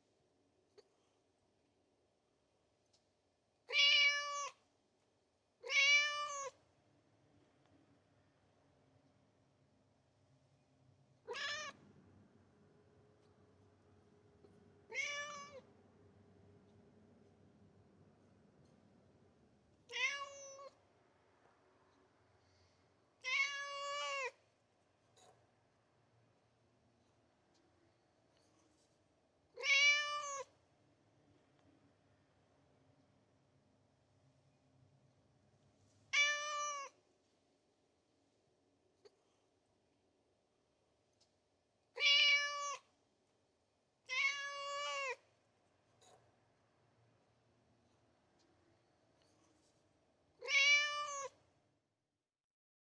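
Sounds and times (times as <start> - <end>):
cat meowing: 3.7 - 4.6, 5.6 - 6.6, 11.2 - 11.8, 14.9 - 15.7, 19.9 - 20.8, 23.2 - 24.4, 29.6 - 30.5, 36.1 - 37.0, 42.0 - 42.9, 44.1 - 45.2, 50.4 - 51.4.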